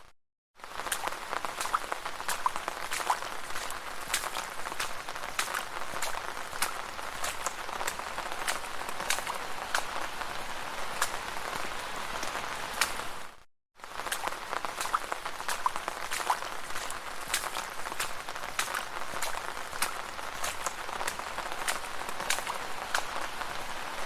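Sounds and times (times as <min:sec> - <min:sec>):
rain hiss: 0:00.6 - 0:24.0
raindrops tapping hard surfaces: 0:00.6 - 0:24.0.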